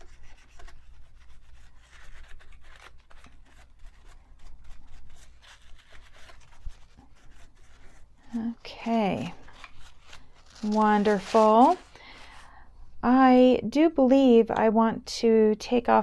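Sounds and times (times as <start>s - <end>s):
cloth rubbing and scratching: 5.1s - 12.5s.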